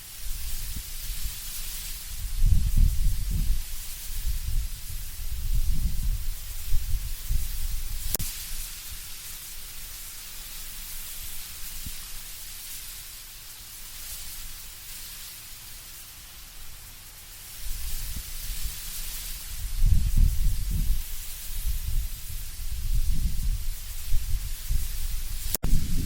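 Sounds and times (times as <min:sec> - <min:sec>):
wind rustling leaves: 0:00.0 - 0:26.0
low rumble of gusts: 0:02.0 - 0:08.2, 0:19.4 - 0:26.0.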